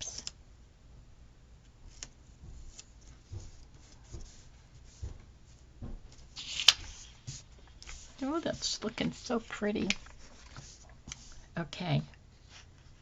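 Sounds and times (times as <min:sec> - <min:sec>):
faint taps: 0:02.4 - 0:06.2
paper handling: 0:06.2 - 0:11.4.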